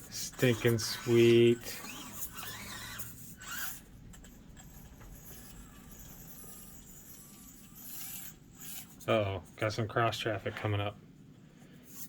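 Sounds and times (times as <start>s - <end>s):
small electric motor whirring: 0.0s - 9.1s.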